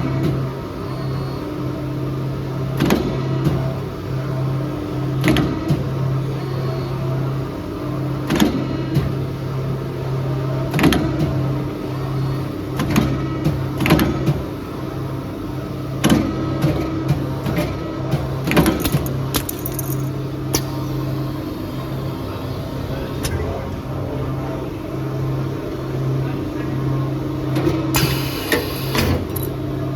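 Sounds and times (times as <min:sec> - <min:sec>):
machine clanks and clicks: 0:16.0 - 0:20.7, 0:27.5 - 0:29.7.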